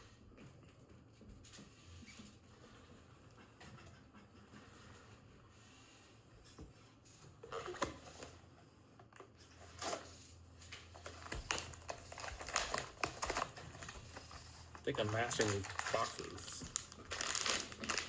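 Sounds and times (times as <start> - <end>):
cardboard packaging tearing: 10.9 - 14.3, 14.9 - 18.0
packaging clicks: 11.0 - 14.3, 14.9 - 18.0.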